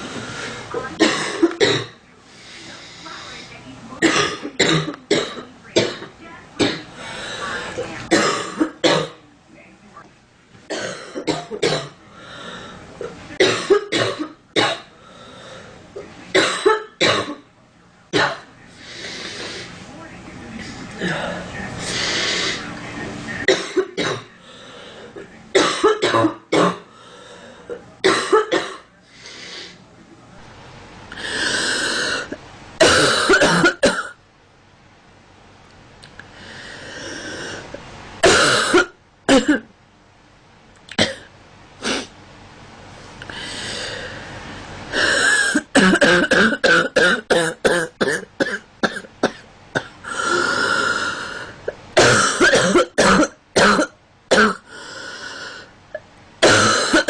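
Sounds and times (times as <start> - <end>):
noisy drawn-out breaths: 0.0 - 1.0, 2.1 - 4.0, 6.8 - 8.0, 12.0 - 13.4, 14.9 - 16.1, 18.7 - 20.0, 20.6 - 23.4, 24.3 - 25.4, 26.8 - 28.0, 29.0 - 29.9, 31.1 - 32.4, 36.2 - 37.8, 42.9 - 45.7, 50.0 - 51.7, 54.6 - 55.8
girl coughing: 1.0 - 1.9, 4.0 - 6.9, 8.1 - 9.2, 10.7 - 11.9, 13.4 - 14.8, 16.4 - 17.4, 23.5 - 24.3, 25.6 - 26.8, 28.0 - 28.9, 32.8 - 34.2, 38.2 - 39.7, 45.4 - 49.9, 52.0 - 54.6, 56.4 - 57.0.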